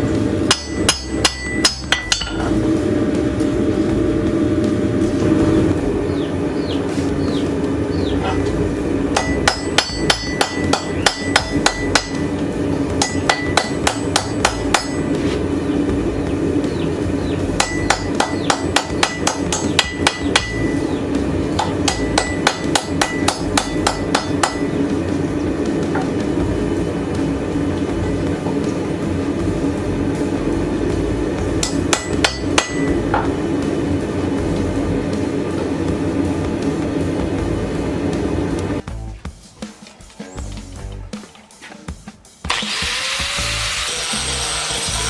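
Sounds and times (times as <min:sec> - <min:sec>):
steady low hum: 0:00.0 - 0:39.4
hammer striking steel on anvil: 0:00.4 - 0:02.6, 0:08.1 - 0:28.9, 0:31.4 - 0:34.4.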